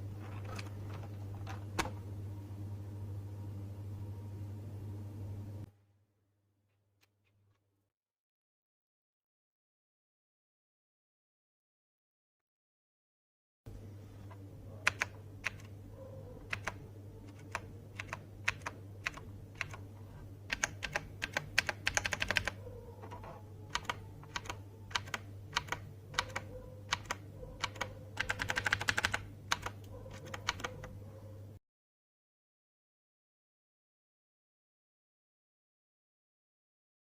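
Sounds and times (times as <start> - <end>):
steady low hum: 0.0 - 5.7, 13.7 - 31.6
clicky mechanical keyboard typing: 14.8 - 15.8, 16.4 - 19.9, 20.5 - 31.0.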